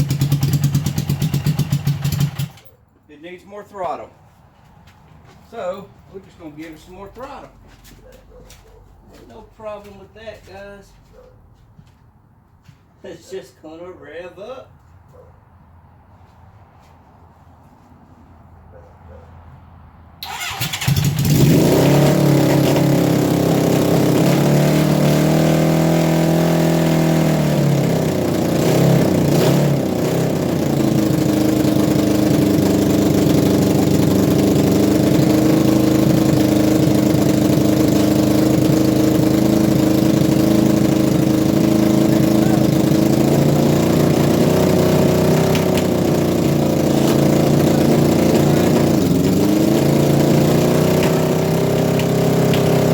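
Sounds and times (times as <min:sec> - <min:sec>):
motorcycle engine starting and revving: 0:00.0 - 0:02.8, 0:20.2 - 0:52.9.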